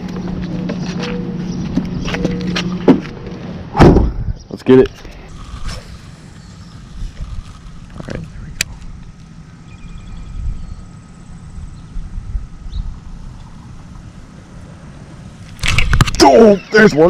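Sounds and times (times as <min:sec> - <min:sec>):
wind buffeting microphone: 0:05.3 - 0:16.2.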